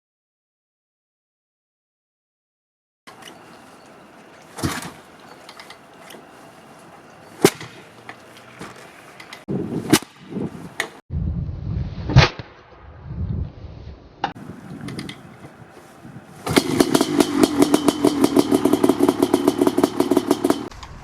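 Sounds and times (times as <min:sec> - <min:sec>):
motorcycle engine coughing: 0:15.3 - 0:20.7.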